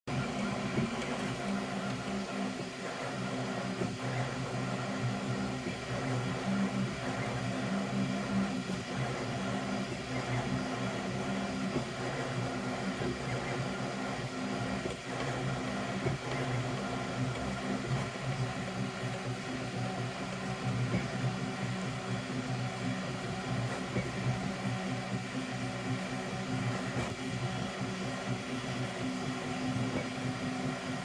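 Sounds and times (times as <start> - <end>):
printer motors humming: 0.1 - 31.0.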